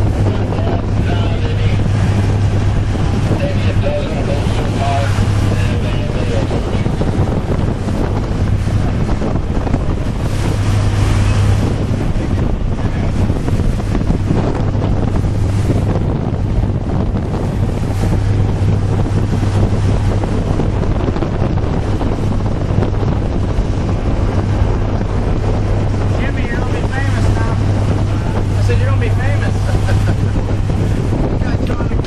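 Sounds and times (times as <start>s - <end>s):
boat motor humming: 0.0s - 32.0s
wind noise on microphone: 0.0s - 32.0s.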